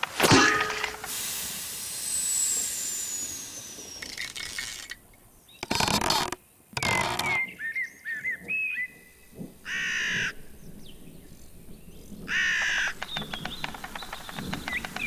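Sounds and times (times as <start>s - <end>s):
sliding whistled chirps: 0.0s - 5.1s, 12.3s - 15.0s
quick clicks: 0.0s - 7.4s, 12.4s - 15.0s
harsh caw-like calls: 9.6s - 10.4s, 12.3s - 15.0s.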